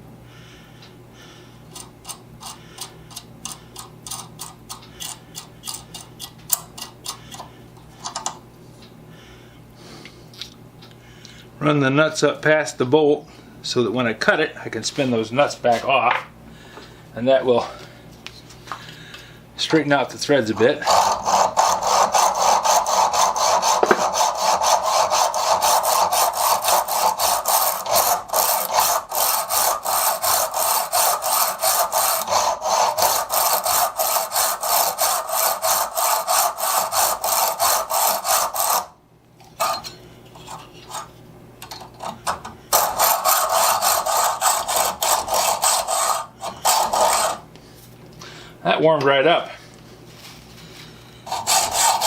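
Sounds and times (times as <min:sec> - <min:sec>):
hacksaw cutting metal bolt: 0:20.8 - 0:38.9, 0:41.7 - 0:47.4.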